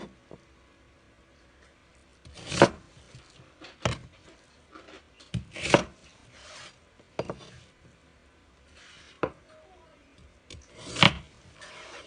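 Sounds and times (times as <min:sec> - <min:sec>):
knife chopping on cutting board: 0:02.3 - 0:02.8, 0:05.3 - 0:06.0.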